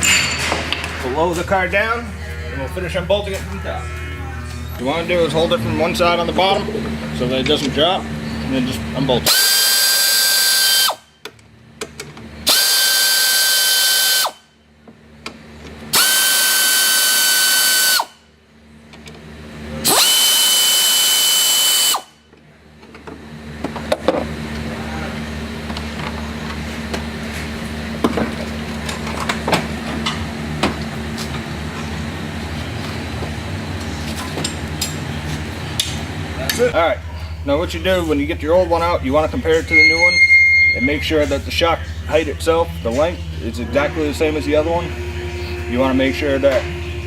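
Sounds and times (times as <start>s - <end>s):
steady low hum: 0.0s - 13.3s, 14.3s - 47.0s
power tool whining: 7.5s - 11.1s, 12.4s - 14.5s, 15.9s - 18.2s, 19.8s - 22.2s.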